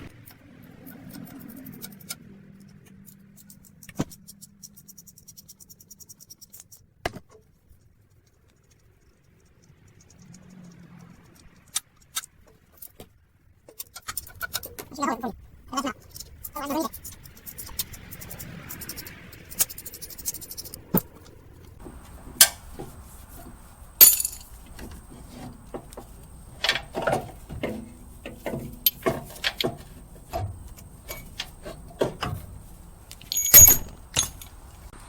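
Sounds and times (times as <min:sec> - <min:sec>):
hand tools clinking on metal: 0:21.8 - 0:34.8
loud metal clank: 0:33.3 - 0:34.5.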